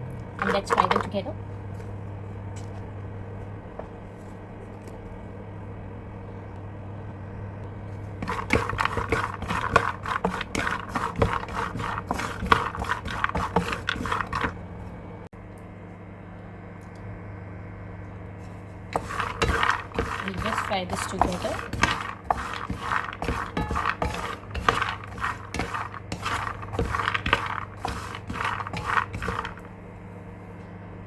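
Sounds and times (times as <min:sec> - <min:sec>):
steady low hum: 0:00.0 - 0:31.0
nuts clattering in a metal pan: 0:00.4 - 0:01.3, 0:08.2 - 0:14.6, 0:19.0 - 0:29.7.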